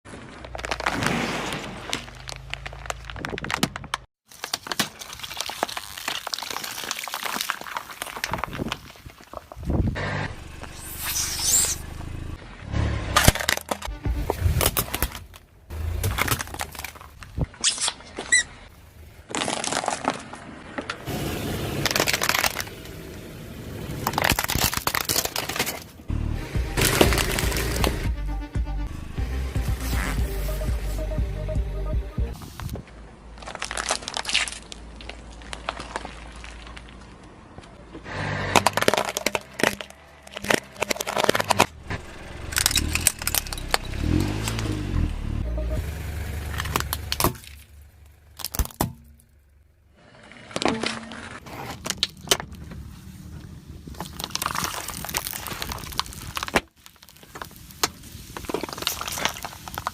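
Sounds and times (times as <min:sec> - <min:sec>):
objects crushed under car tyre: 0:00.1 - 0:10.0, 0:13.1 - 0:23.1, 0:23.8 - 0:26.1, 0:26.8 - 0:28.0, 0:33.4 - 0:45.1, 0:46.4 - 0:49.4, 0:50.2 - 0:52.8, 0:53.4 - 0:59.9
firecrackers cracking and snapping: 0:00.4 - 0:09.7, 0:21.7 - 0:23.1, 0:23.9 - 0:26.0, 0:33.4 - 0:37.2, 0:38.5 - 0:44.8, 0:53.8 - 0:59.9
short high squeak: 0:10.6 - 0:11.9
low hum: 0:39.8 - 0:48.3.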